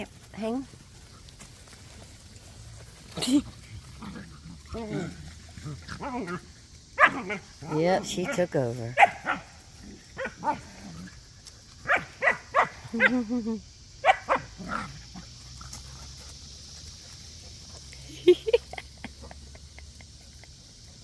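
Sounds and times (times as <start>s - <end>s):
dogs barking: 7.0s - 8.4s, 9.0s - 9.5s, 10.2s - 10.8s, 11.8s - 13.2s, 14.0s - 14.9s.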